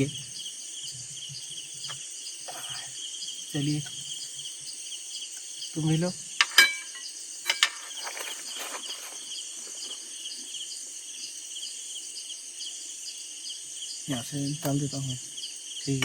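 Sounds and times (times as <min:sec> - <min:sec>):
night insects chirping: 0:00.0 - 0:16.0
utensils clinking: 0:06.4 - 0:10.0
light scraping: 0:06.5 - 0:10.1.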